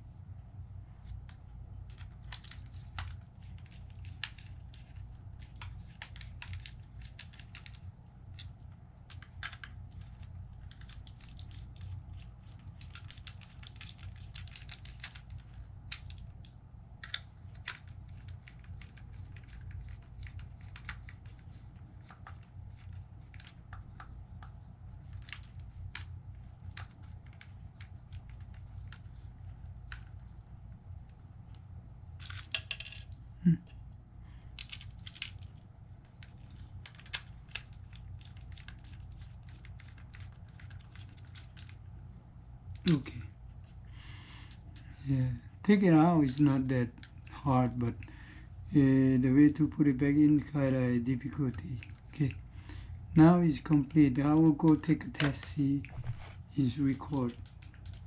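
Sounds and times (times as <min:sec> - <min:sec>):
steady low hum: 0:00.0 - 0:58.0
plastic case being handled: 0:54.6 - 0:57.9.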